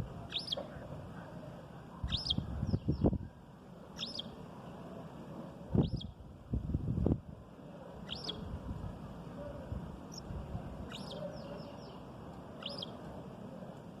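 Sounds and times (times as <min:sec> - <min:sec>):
low background noise: 0:00.0 - 0:14.0
sparrow chirping: 0:00.1 - 0:00.9, 0:02.0 - 0:03.3, 0:03.9 - 0:04.4, 0:05.8 - 0:06.2, 0:08.0 - 0:08.5, 0:10.1 - 0:13.1.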